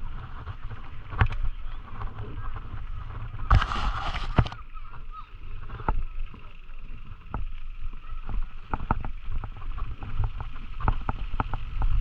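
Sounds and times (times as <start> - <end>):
tyres rumbling on rough ground: 0.0 - 12.0
bike knocking over bumps: 7.2 - 12.0.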